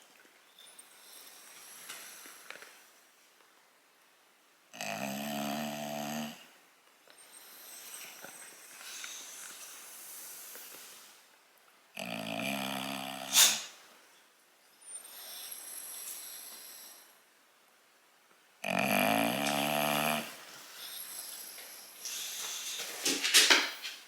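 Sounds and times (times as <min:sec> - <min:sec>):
dog snoring in-breaths: 0:04.8 - 0:06.6, 0:12.0 - 0:13.8, 0:18.6 - 0:22.7.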